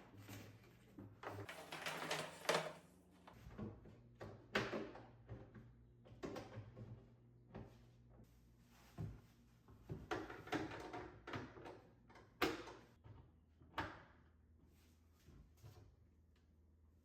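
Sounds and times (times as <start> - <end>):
objects knocking and scraping: 1.2 - 2.9.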